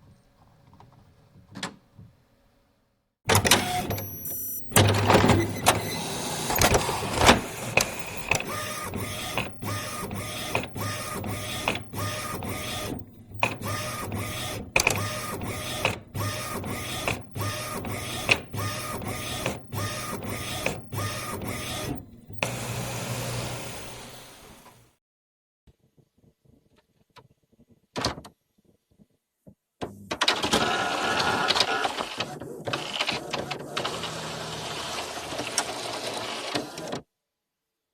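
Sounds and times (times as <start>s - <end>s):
printer clicks: 3.3s - 22.6s
printer head whirring: 3.3s - 24.8s.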